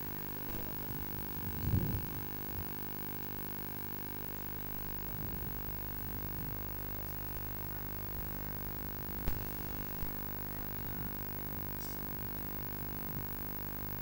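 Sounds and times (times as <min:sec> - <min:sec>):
steady low hum: 0:00.0 - 0:14.0
muffled low thump: 0:01.4 - 0:02.7.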